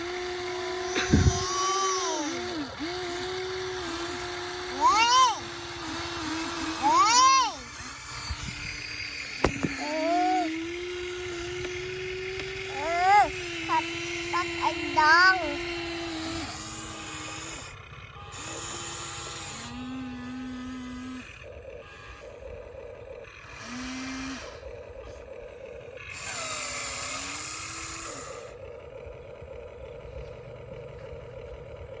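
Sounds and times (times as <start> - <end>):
excavator engine rumble: 0.0 - 32.0
hydraulic whine gliding in pitch: 0.0 - 32.0
hiss: 26.2 - 28.6.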